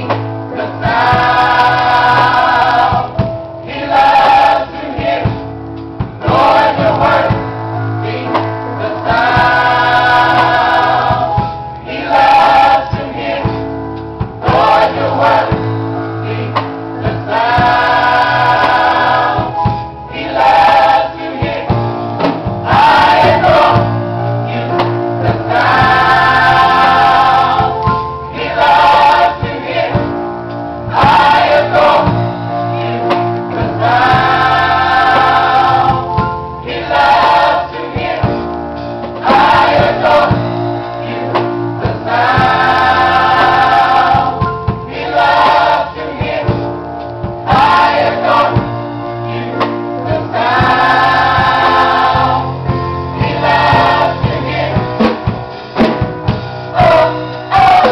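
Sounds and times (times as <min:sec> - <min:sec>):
band accompaniment: 0:00.0 - 0:57.9
gospel choir singing: 0:00.0 - 0:57.9.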